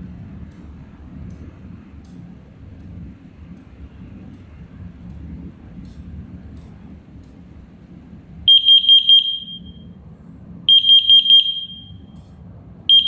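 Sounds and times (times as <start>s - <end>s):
high-pitched alarm beeps: 8.5s - 9.9s, 10.7s - 12.2s.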